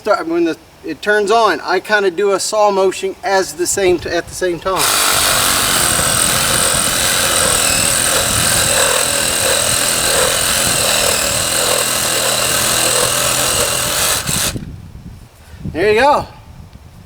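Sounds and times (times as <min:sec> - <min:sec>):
reciprocating saw cutting wood: 0:04.1 - 0:14.7.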